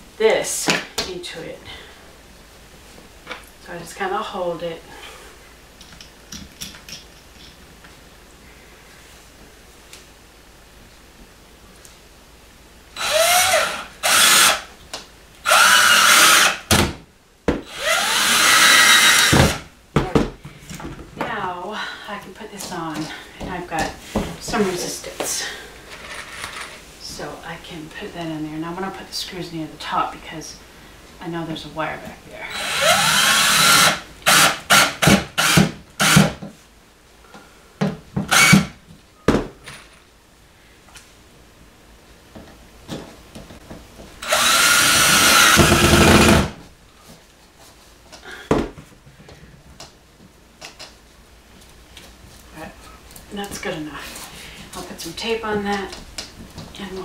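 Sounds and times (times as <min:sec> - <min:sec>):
power drill driving screws: 0:13.0 - 0:14.7, 0:15.4 - 0:16.7, 0:17.7 - 0:19.6, 0:32.5 - 0:36.4, 0:38.3 - 0:38.8, 0:44.2 - 0:46.5.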